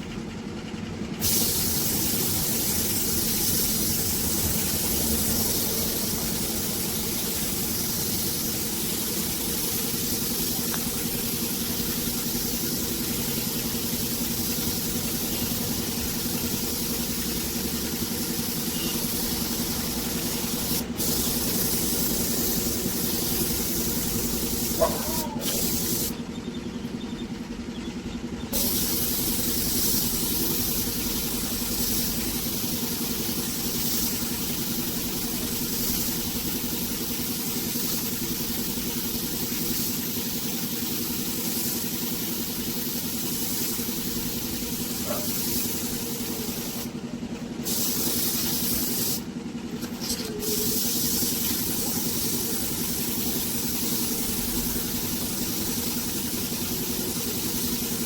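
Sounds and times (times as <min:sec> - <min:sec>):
paint spray gun hissing: 0:01.2 - 0:26.3, 0:28.5 - 0:58.0
motor hum: 0:02.1 - 0:36.6.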